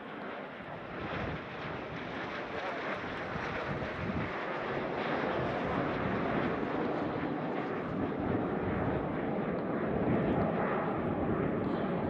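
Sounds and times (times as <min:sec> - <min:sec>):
wind on microphone: 0:03.0 - 0:04.4.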